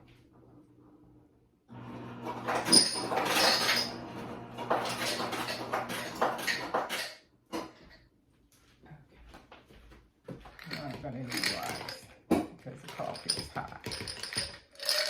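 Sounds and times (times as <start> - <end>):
ice cubes clinking into a cup: 2.3 - 4.0, 4.6 - 7.2, 10.6 - 12.1, 12.8 - 15.0.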